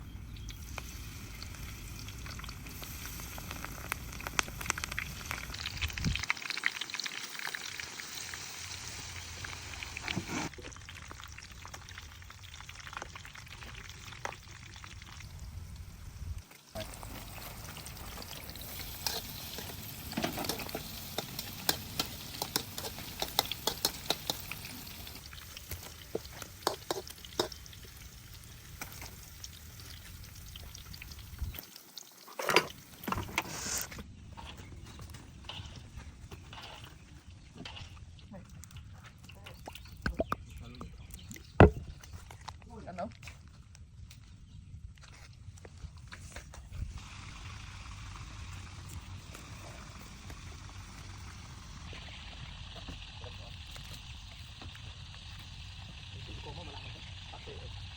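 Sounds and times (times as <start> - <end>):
broccoli sizzling in oil: 0.3 - 34.0, 46.8 - 57.9
utensil scraping a pan: 18.5 - 25.2, 32.3 - 34.6.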